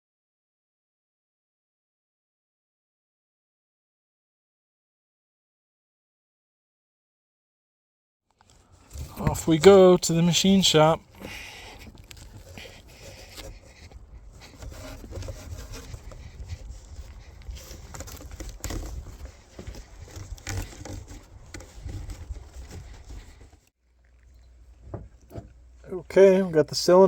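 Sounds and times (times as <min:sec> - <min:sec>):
objects rustling and knocking: 0:08.4 - 0:25.8.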